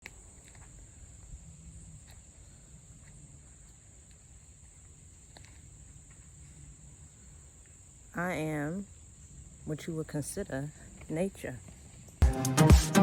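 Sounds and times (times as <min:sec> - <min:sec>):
insect chorus trilling: 0:00.0 - 0:12.2
faint ticks: 0:05.3 - 0:06.3.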